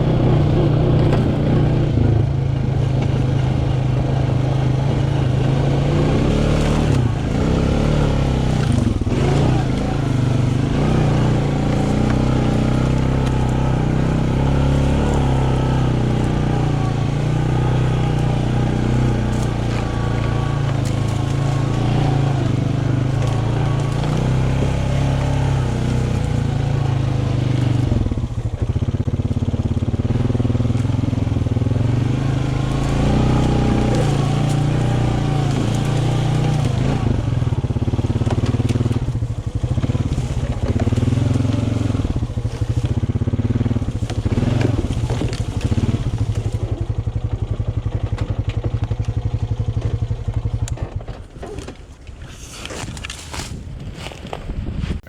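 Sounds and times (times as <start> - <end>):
vehicle engine running: 0.0 - 55.0.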